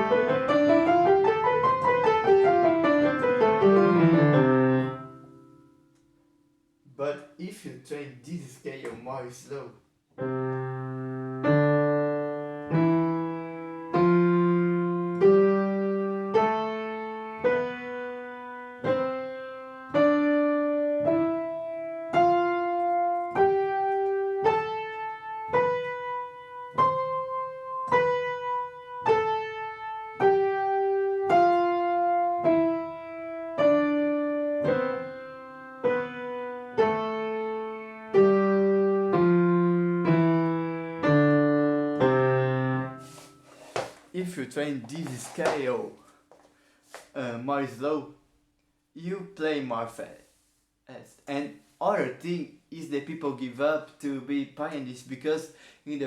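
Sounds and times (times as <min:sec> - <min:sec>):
piano scale played slowly: 0:00.0 - 0:06.8, 0:10.2 - 0:43.5.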